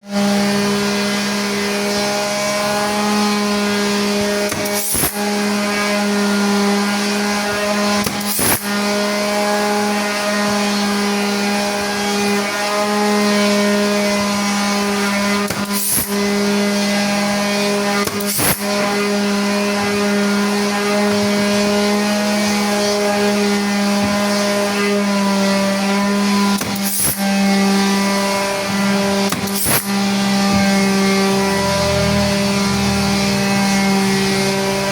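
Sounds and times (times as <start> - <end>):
woodworking machine motor hum: 0.0 - 34.9.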